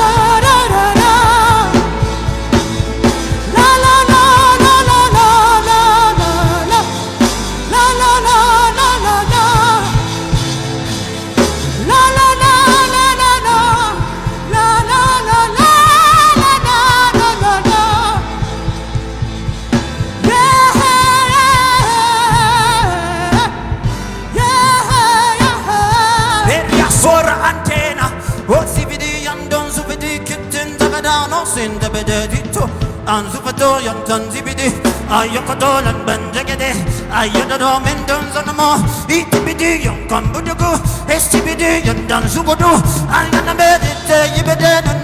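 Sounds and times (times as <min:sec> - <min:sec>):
full band accompaniment: 0:00.0 - 0:45.0
person singing with vibrato: 0:00.0 - 0:45.0.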